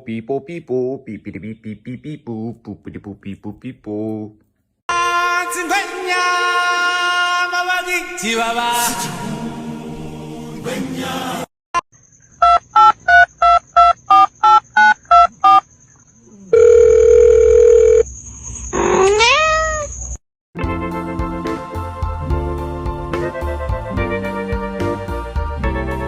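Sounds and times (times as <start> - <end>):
background music: 4.9 - 11.5, 20.6 - 26.0
short electronic beeps: 12.4 - 15.6.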